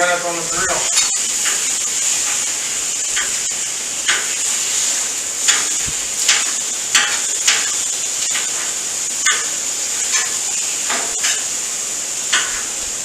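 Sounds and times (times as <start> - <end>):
chicken sizzling: 0.0 - 13.0
knife chopping on metal: 6.3 - 7.7.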